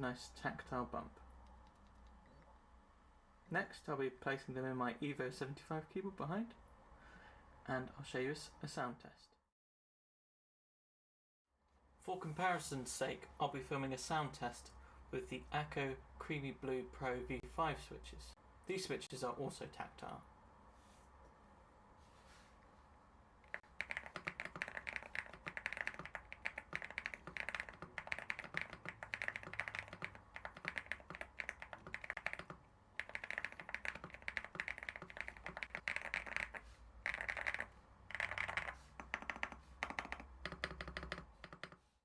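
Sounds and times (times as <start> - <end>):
typing on mechanical keyboard: 23.4 - 41.8.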